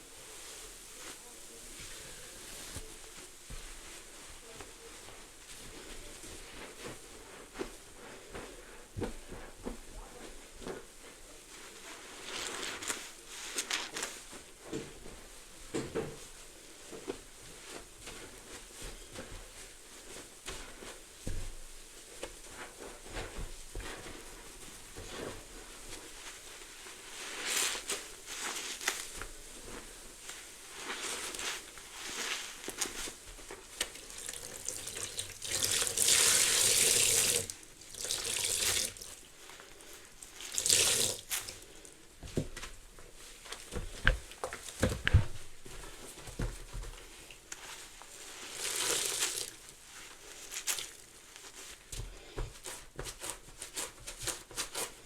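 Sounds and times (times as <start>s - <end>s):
sponge squeezed with water gushing: 34.0s - 39.2s, 40.4s - 41.6s, 48.4s - 49.6s.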